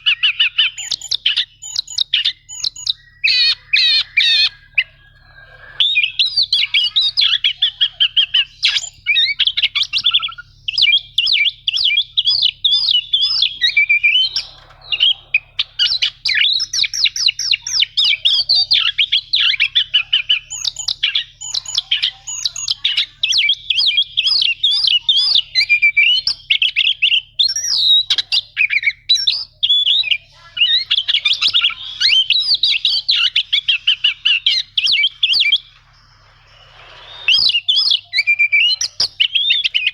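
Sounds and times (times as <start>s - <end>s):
bird singing chirps and trills: 0.0s - 39.9s.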